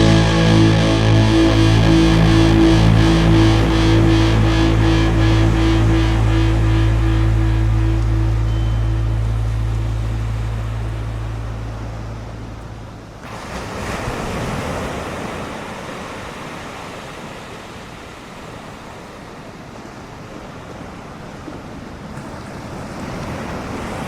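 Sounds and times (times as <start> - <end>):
background music: 0.0 - 12.5
wave breaking: 0.0 - 15.7
ocean surf: 0.0 - 24.0.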